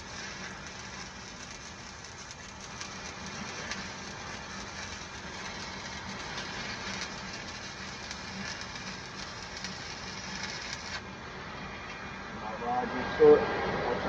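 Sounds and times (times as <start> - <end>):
welding arc crackling: 0.0 - 11.1.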